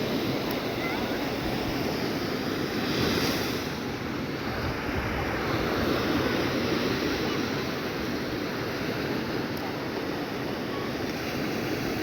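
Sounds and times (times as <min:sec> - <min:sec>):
waves breaking on a beach: 0:00.0 - 0:12.0.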